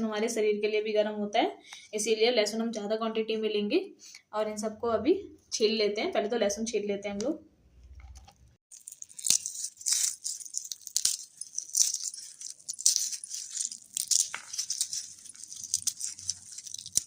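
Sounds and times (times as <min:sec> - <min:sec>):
garlic skins rustling and crackling: 0:08.7 - 0:17.0.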